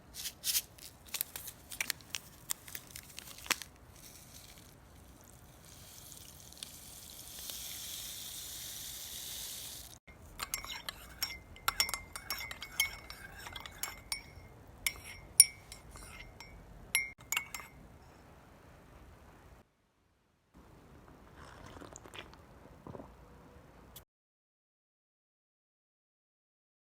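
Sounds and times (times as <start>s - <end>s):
hard objects clinking: 9.9s - 17.8s.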